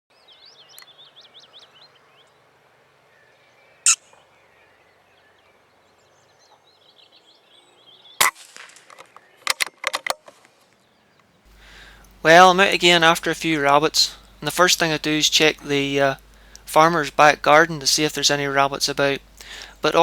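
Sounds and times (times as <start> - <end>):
small birds chirping: 0.1 - 8.3, 10.6 - 20.0
sharp cracks: 8.2 - 10.6.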